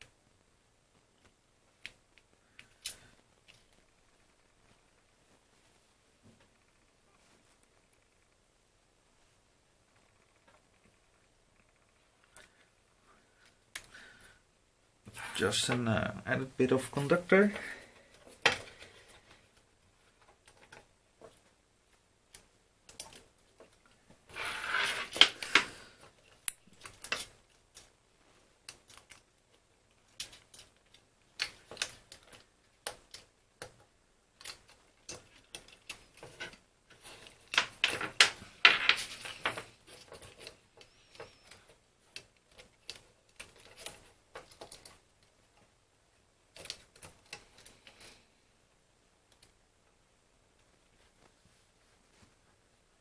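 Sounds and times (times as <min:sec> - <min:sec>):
plastic parts clicking and tapping: 0:28.6 - 0:45.7.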